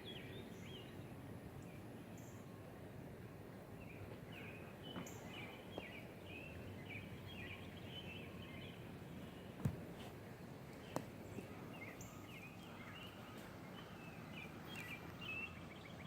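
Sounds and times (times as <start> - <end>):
steady outdoor hiss: 0.0 - 16.0
birds chirping: 3.7 - 16.0.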